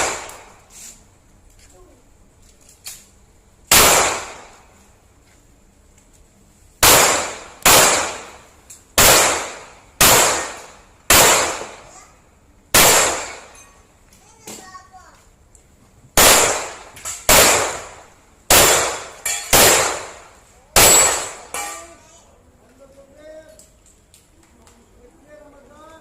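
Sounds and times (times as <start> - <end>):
pistol shots: 0.0 - 0.6, 3.7 - 4.6, 6.8 - 11.9, 12.7 - 13.6, 16.2 - 21.8.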